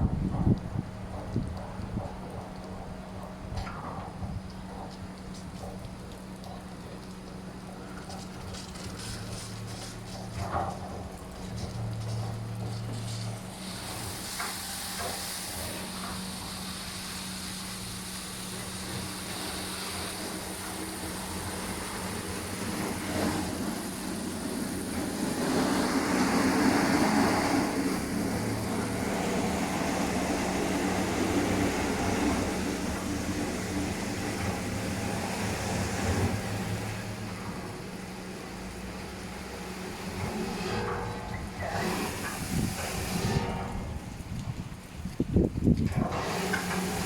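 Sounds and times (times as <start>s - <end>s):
washing machine electric hum: 0.0s - 47.0s
rushing hiss: 12.9s - 44.4s.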